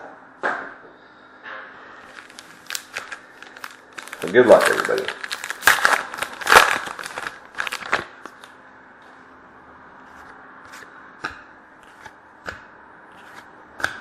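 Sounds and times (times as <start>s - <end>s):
card pack wrapper crinkling and tearing: 2.1s - 8.5s.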